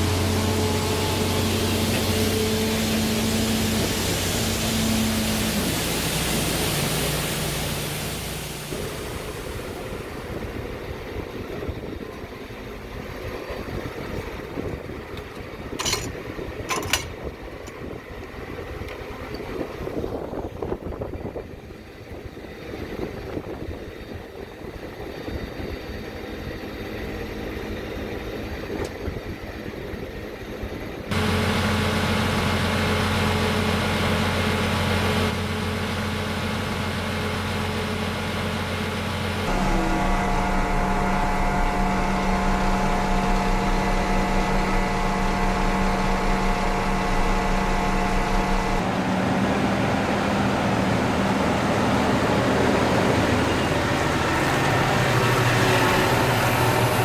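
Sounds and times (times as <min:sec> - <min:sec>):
tractor engine humming: 0:00.0 - 0:57.0
wind noise on microphone: 0:08.7 - 0:26.1.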